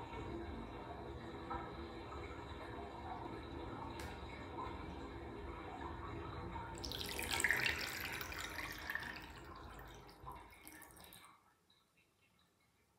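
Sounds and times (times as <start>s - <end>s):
bathtub drain slurping: 6.7s - 11.3s.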